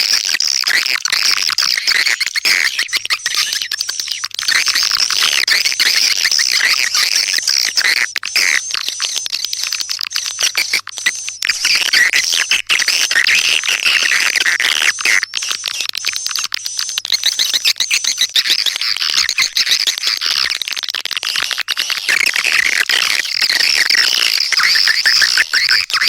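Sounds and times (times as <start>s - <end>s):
swiftlet chirps and twitters: 1.5s - 20.6s.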